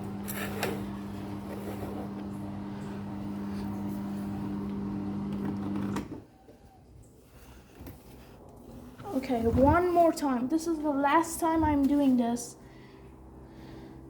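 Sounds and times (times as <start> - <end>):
washing machine humming: 0.0 - 6.5.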